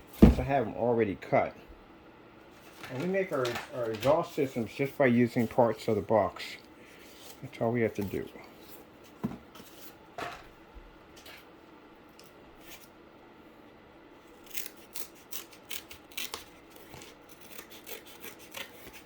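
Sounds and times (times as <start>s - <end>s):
cardboard cutting strokes: 14.4s - 19.0s.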